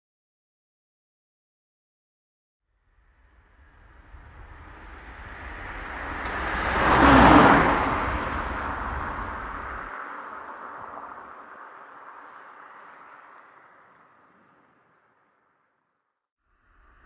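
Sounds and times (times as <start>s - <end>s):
car passing by: 2.9s - 15.7s.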